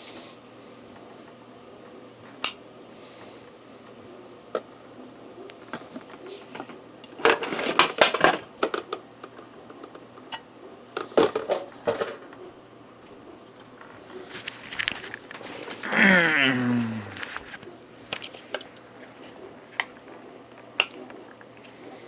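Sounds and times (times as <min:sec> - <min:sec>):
packaging clicking and rustling: 0:13.8 - 0:15.9.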